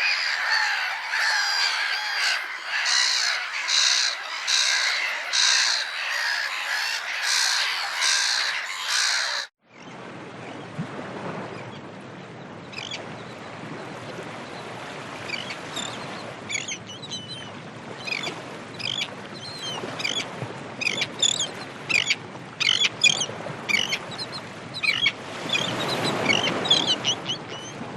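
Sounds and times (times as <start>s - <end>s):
flock of gulls calling: 0.0s - 9.5s, 20.8s - 27.8s
gulls calling harshly: 0.0s - 9.5s.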